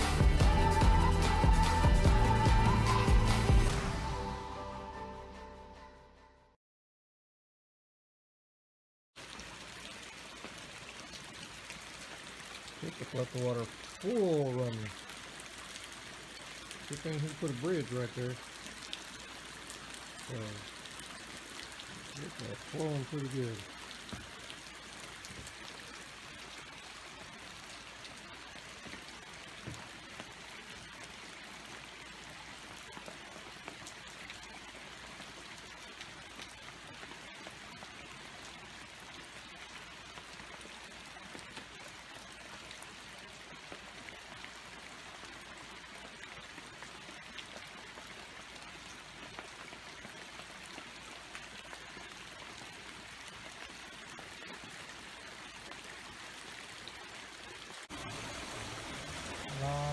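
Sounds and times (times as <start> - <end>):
stream rushing water: 47.4 - 59.9.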